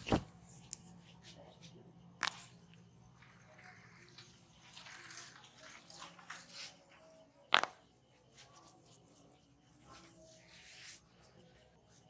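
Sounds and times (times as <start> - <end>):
hands rubbing skin and hair: 0.0 - 0.3.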